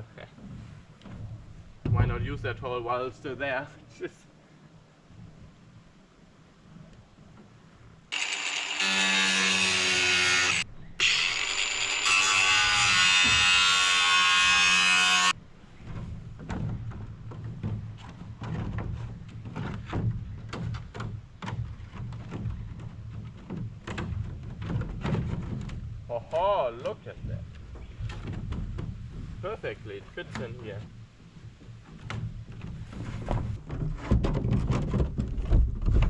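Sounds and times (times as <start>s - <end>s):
angle grinder cutting: 8.1s - 15.4s.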